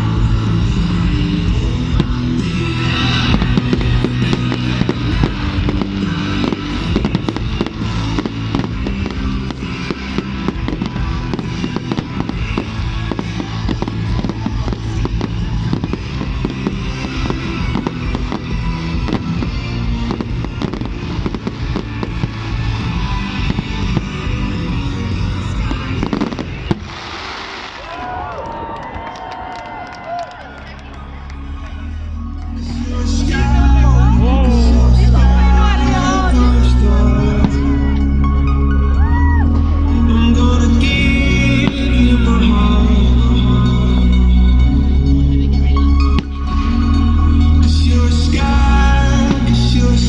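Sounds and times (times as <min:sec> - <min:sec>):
music with bass line: 0:00.0 - 0:27.0, 0:30.6 - 0:50.0
fireworks bangs and crackles: 0:00.0 - 0:29.2, 0:47.6 - 0:50.0.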